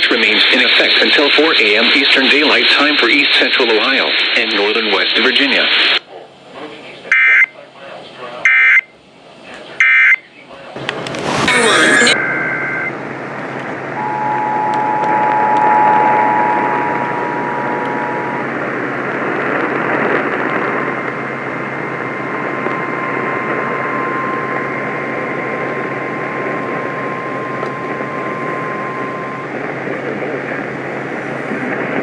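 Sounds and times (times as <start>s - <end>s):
radio static hiss: 0.0s - 6.0s, 10.7s - 12.2s, 30.2s - 32.0s
faint steady whistle: 14.0s - 18.8s, 22.8s - 29.6s
two-tone attention signal: 14.0s - 18.8s.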